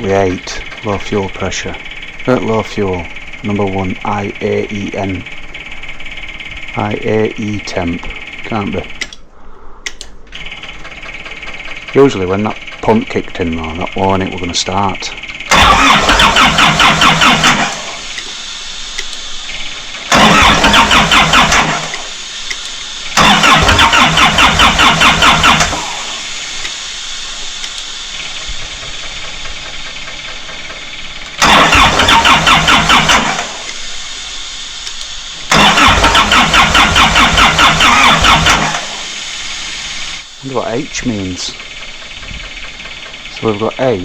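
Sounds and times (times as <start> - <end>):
diesel engine cranking: 0.0 - 9.2, 9.8 - 44.0
steady quiet hum: 0.0 - 44.0.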